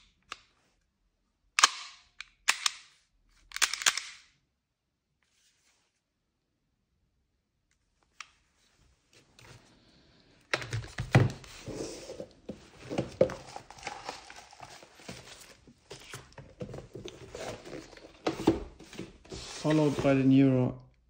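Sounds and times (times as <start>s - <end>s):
packaging rustling and crinkling: 10.6s - 20.3s.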